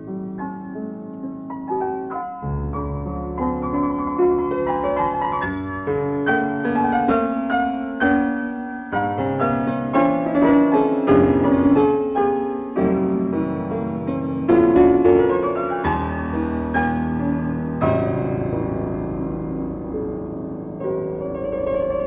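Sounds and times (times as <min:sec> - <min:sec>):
solo piano melody: 0:00.0 - 0:22.0.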